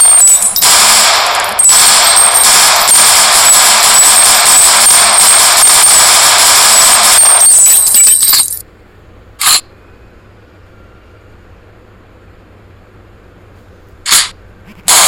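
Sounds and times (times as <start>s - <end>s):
submachine gun firing: 0.0s - 8.6s.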